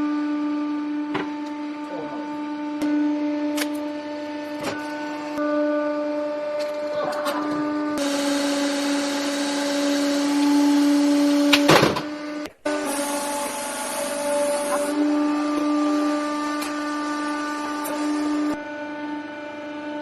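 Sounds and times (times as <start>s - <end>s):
hydraulic press pump hum: 0.7s - 20.0s.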